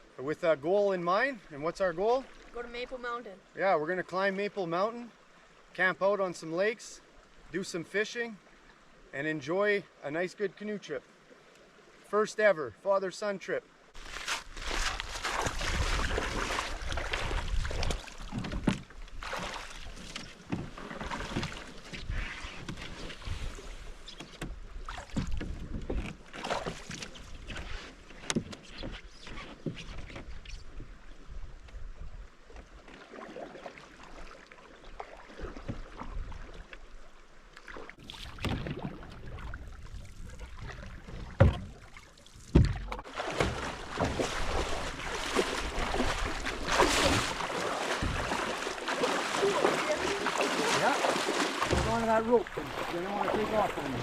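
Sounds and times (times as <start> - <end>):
paddle splashing water: 0.0 - 8.8, 13.9 - 54.0
paddle knocking against hull: 14.6 - 23.5, 24.1 - 30.3, 35.0 - 36.8, 40.5 - 54.0.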